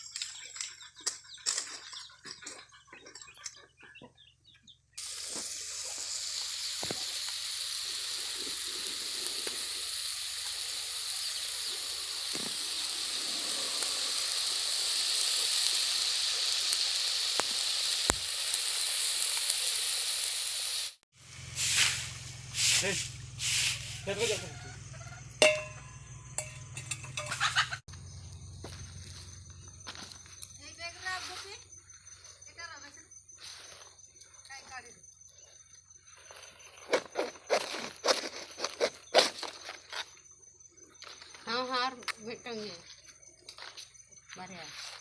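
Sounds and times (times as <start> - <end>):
oil popping: 5.0 - 19.8
fish sizzling in hot oil: 5.0 - 25.7.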